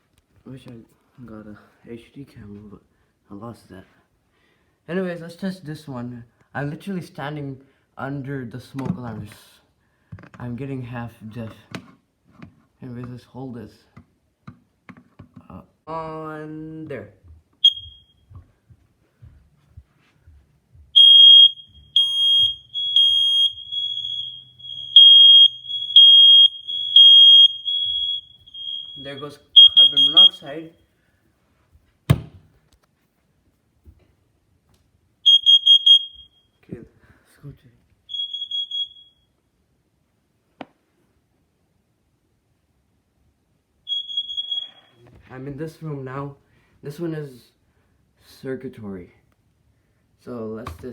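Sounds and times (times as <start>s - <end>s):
faint alarm tone: 17.6s - 18.3s, 21.0s - 30.4s, 38.1s - 39.3s, 43.9s - 45.1s
smoke alarm beeps: 17.6s - 18.3s, 20.9s - 30.5s, 35.2s - 36.6s, 38.1s - 39.4s, 43.9s - 45.0s.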